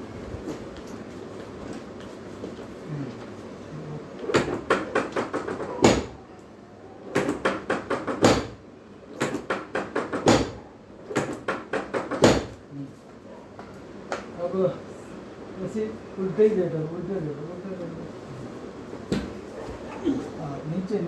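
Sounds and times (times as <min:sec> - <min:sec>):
rapid knocking and tapping: 0:04.2 - 0:06.2, 0:07.2 - 0:08.6, 0:09.2 - 0:12.6.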